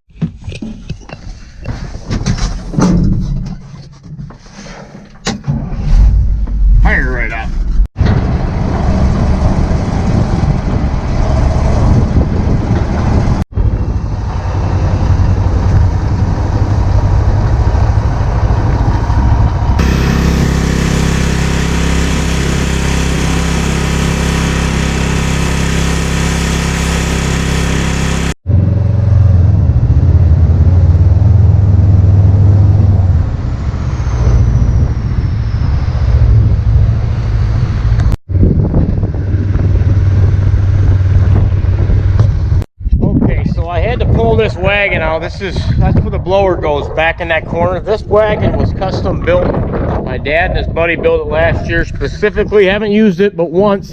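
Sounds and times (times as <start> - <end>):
vehicle engine running: 8.2 - 33.6.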